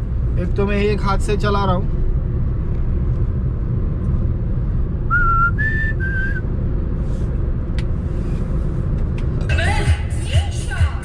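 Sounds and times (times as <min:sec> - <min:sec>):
car engine and road noise: 0:00.0 - 0:11.0
person whistling: 0:05.1 - 0:06.4.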